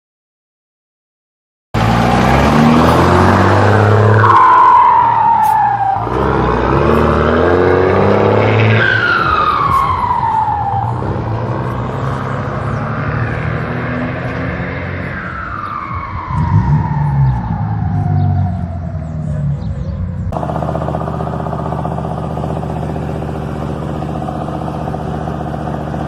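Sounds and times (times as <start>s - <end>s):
engine revving: 1.8s - 26.0s.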